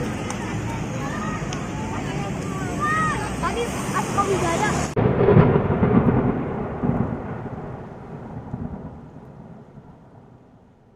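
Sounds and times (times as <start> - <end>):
deep rumble: 4.9 - 10.9.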